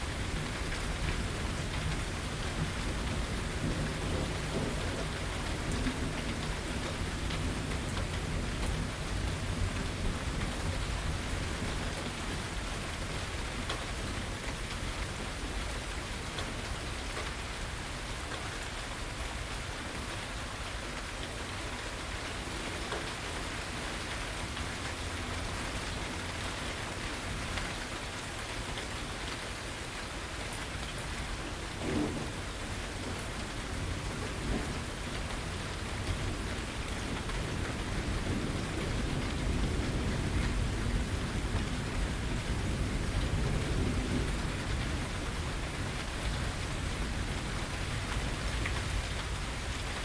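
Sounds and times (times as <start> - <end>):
steady rain on a porch: 0.0 - 50.0
distant thunder rumble: 0.3 - 11.8, 31.7 - 49.0.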